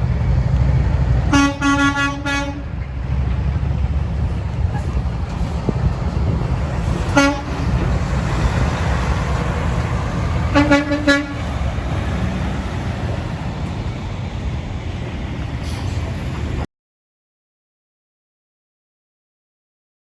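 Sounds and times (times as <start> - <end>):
truck engines and traffic rumble: 0.0 - 16.7
truck horn toots: 1.3 - 2.8, 7.0 - 7.8, 10.4 - 11.7.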